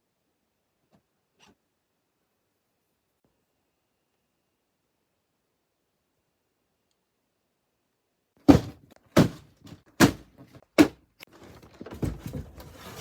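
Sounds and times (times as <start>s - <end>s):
hard thuds: 8.4s - 11.0s.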